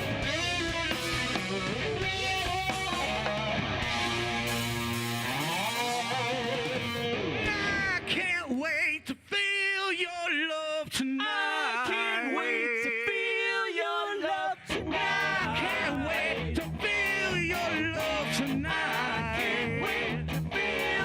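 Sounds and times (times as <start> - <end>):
electric guitar bent notes: 0.0 - 8.3
live rock band music: 0.0 - 8.3, 14.8 - 21.0.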